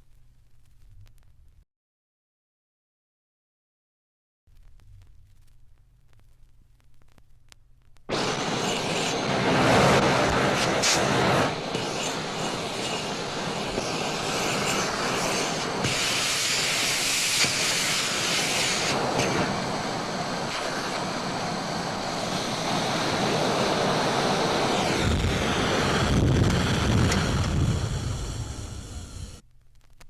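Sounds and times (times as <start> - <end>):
hissing wash of noise: 8.1 - 29.4
deep rumble: 22.4 - 29.4.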